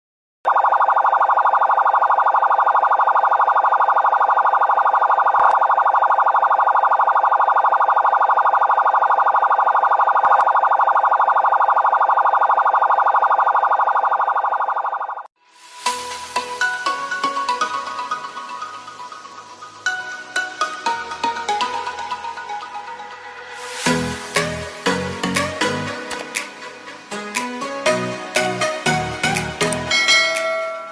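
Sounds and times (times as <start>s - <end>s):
electronic siren warbling: 0.5s - 27.2s.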